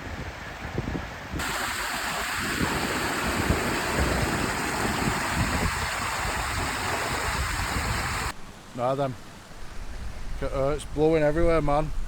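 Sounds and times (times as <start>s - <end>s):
wind buffeting microphone: 0.1s - 8.4s
rushing hiss: 1.4s - 8.4s.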